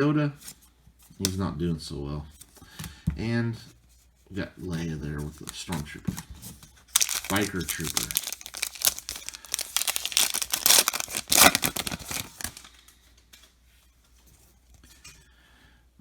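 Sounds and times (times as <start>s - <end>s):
card pack wrapper crinkling: 5.2s - 6.2s, 6.9s - 12.8s.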